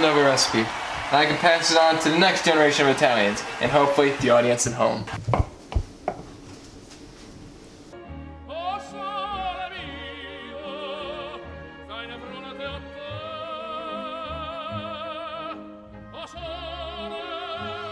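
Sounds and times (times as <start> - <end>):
musical accompaniment: 8.0 - 17.9
operatic singing: 8.4 - 17.9.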